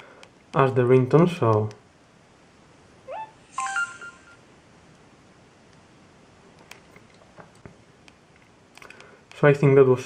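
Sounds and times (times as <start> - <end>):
phone message tone beeps: 3.1 - 4.4.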